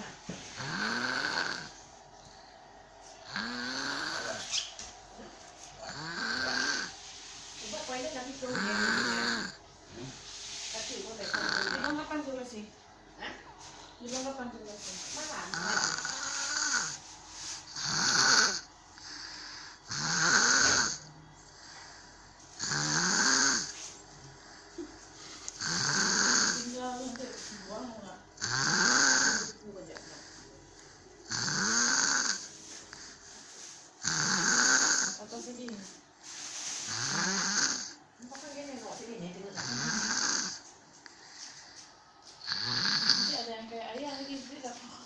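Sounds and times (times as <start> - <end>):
quiet breathing: 0.0 - 4.6, 13.1 - 28.2, 29.3 - 31.3, 32.2 - 34.5, 40.4 - 45.0
person snoring loudly: 0.6 - 1.8, 3.3 - 4.4, 5.8 - 6.9, 8.5 - 9.6, 11.2 - 12.0, 15.5 - 17.0, 17.8 - 21.1, 22.6 - 23.7, 25.6 - 26.7, 28.4 - 29.6, 31.3 - 32.5, 34.0 - 35.2, 36.9 - 38.0, 39.6 - 40.6, 42.4 - 43.4.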